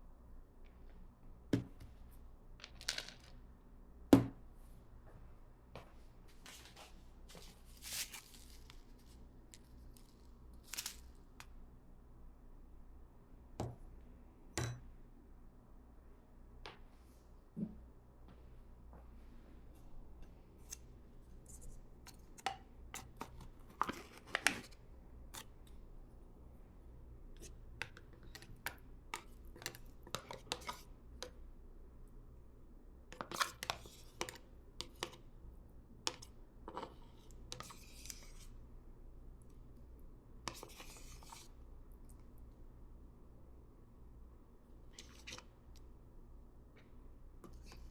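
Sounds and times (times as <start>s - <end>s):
small objects clicking and scraping: 7.8s - 11.2s.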